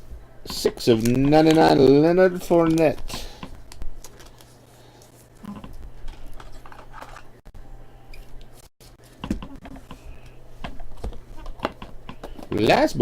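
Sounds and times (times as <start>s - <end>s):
trading cards clicking and rustling: 0.5s - 7.4s.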